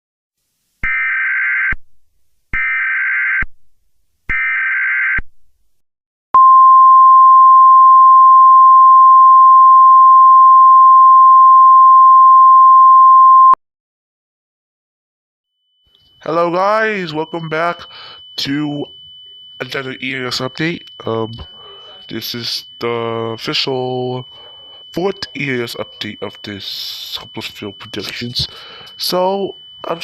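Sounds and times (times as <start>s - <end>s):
steady attention tone: 15.9s - 30.0s.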